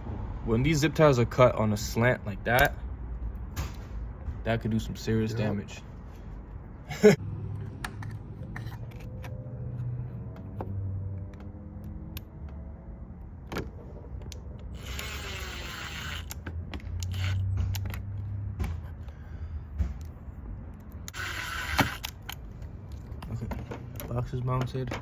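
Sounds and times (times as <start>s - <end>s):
clicks and handling of car parts: 2.5s - 4.4s, 7.5s - 15.0s, 16.2s - 25.0s.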